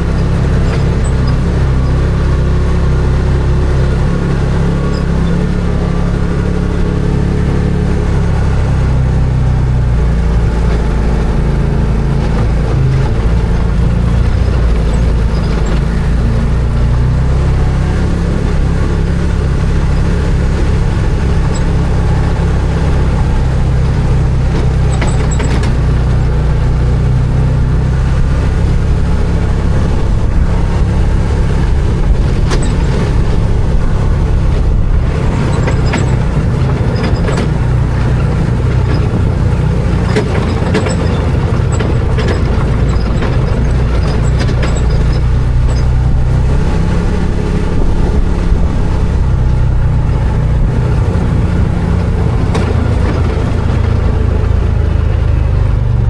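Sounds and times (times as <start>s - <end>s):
engine running steadily: 0.0s - 56.0s
clicks and knocks: 35.0s - 45.9s.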